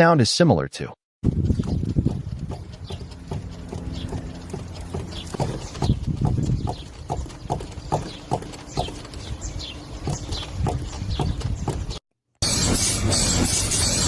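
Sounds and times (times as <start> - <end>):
suspension knocking: 1.2 - 9.1
suspension squeaking: 1.3 - 14.0.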